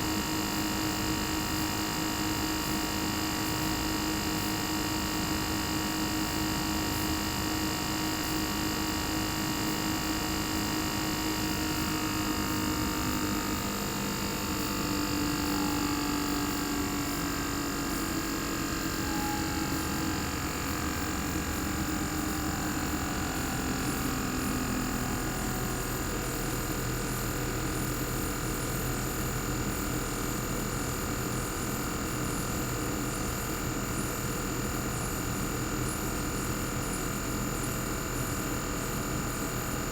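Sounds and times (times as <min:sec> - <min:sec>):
thin high whine: 0:14.6 - 0:27.8.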